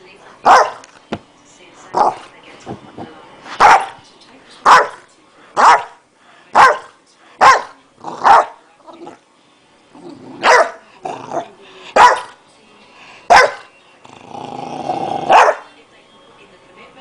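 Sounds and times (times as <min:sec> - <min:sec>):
dog barking: 0:00.4 - 0:00.8, 0:03.6 - 0:04.0, 0:04.6 - 0:05.0, 0:05.6 - 0:08.6, 0:10.4 - 0:10.8, 0:12.0 - 0:12.4, 0:13.3 - 0:13.7, 0:15.3 - 0:15.7.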